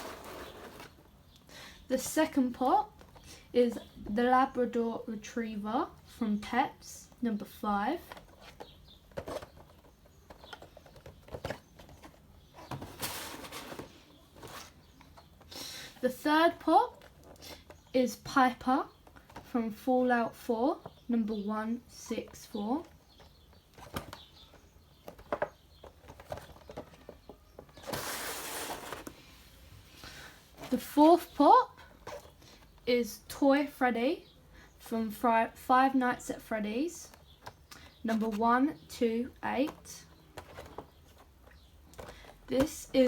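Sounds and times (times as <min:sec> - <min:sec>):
packaging knocks and clicks: 0:08.0 - 0:15.5, 0:23.1 - 0:29.2
packaging rustling: 0:23.7 - 0:29.3.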